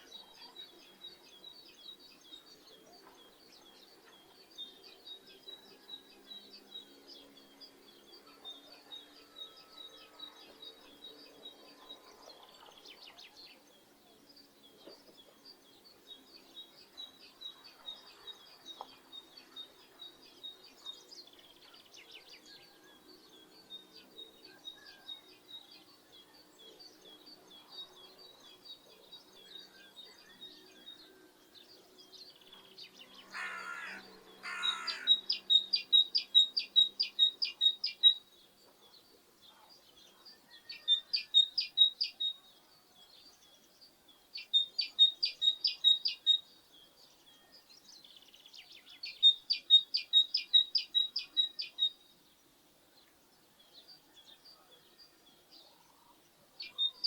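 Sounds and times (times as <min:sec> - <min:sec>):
songbirds chirping: 0:00.0 - 0:57.0
short harsh bird calls: 0:33.3 - 0:35.1.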